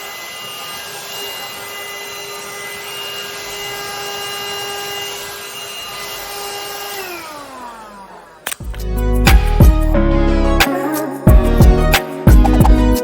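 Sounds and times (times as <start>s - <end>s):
hand-held vacuum cleaner whine: 0.0s - 8.8s.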